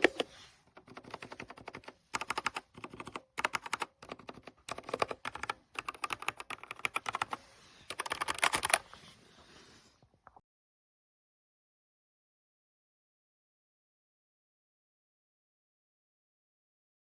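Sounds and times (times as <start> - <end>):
mechanical keyboard key clacks: 0.0 - 7.3, 7.9 - 8.8.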